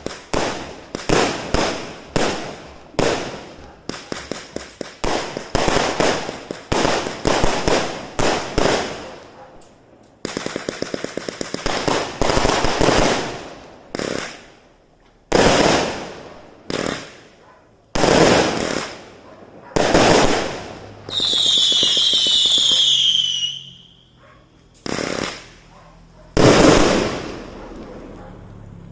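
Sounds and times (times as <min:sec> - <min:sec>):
fireworks bangs with crackling: 0:00.0 - 0:09.4, 0:10.2 - 0:24.0, 0:24.7 - 0:28.2
heavy firework blasts: 0:00.0 - 0:09.4, 0:10.2 - 0:24.1, 0:24.7 - 0:25.7, 0:26.3 - 0:28.6
rattle of small fireworks shots: 0:00.0 - 0:28.9
high falling firework whistle: 0:21.1 - 0:24.2.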